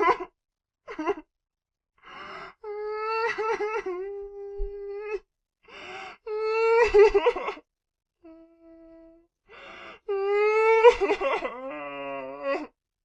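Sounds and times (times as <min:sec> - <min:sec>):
sharp gasping inhale: 0:05.7 - 0:06.2.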